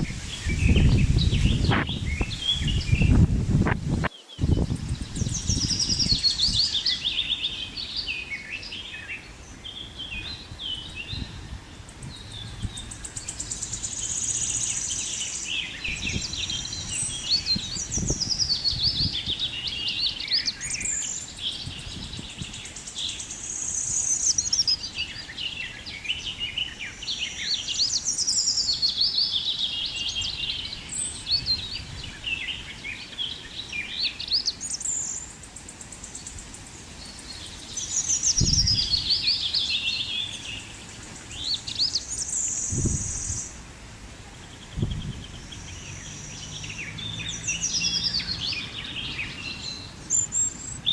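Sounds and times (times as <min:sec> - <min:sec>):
wind on microphone: 0:00.0 - 0:07.4, 0:09.7 - 0:23.3, 0:29.7 - 0:33.0, 0:36.2 - 0:43.7, 0:44.4 - 0:50.9
birds chirping and singing: 0:00.0 - 0:43.6, 0:44.3 - 0:50.9.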